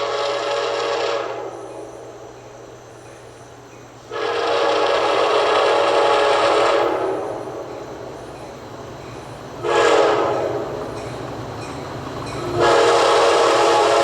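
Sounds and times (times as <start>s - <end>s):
locomotive air horn blasts: 0.0s - 1.7s, 4.1s - 7.7s, 9.6s - 10.9s, 12.4s - 14.0s.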